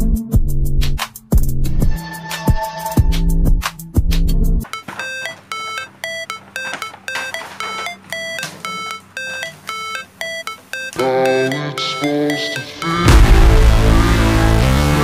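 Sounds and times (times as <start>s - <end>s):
plinking synth melody: 4.7s - 13.6s
hip-hop music: 5.3s - 15.0s.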